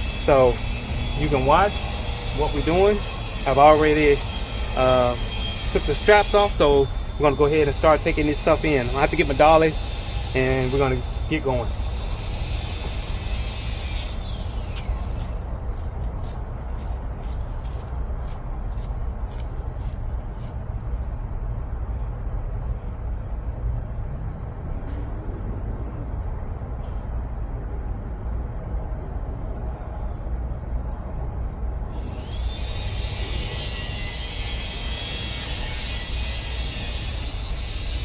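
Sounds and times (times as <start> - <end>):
insects chirring: 0.0 - 38.0.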